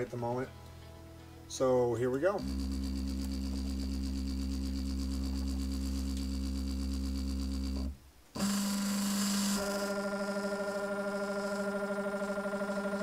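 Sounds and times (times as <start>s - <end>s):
stepper motors whining: 9.3s - 13.0s.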